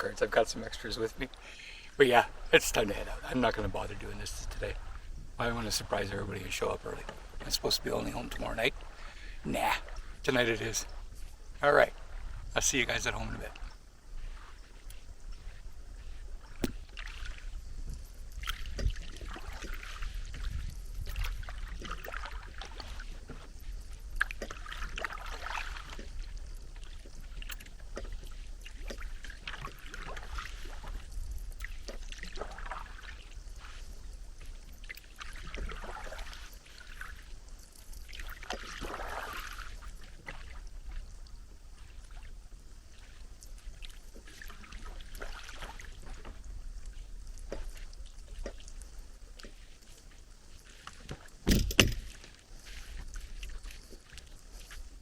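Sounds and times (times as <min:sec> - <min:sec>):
paddle splashing in water: 0:00.0 - 0:55.0.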